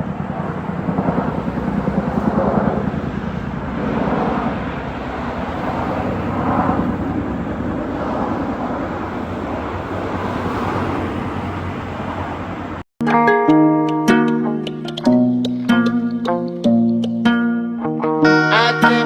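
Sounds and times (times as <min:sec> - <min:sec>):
helicopter rotors beating: 0:00.0 - 0:12.8.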